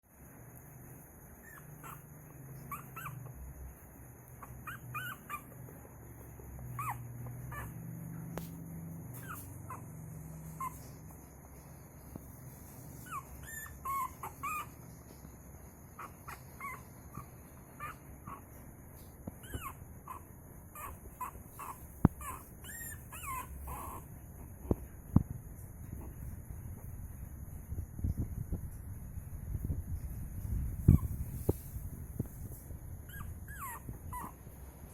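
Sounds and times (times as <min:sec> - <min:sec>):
puppy whimpering and squealing: 0:01.4 - 0:07.9, 0:09.0 - 0:11.3, 0:12.9 - 0:15.3, 0:15.9 - 0:24.8, 0:30.8 - 0:31.4, 0:32.9 - 0:34.9.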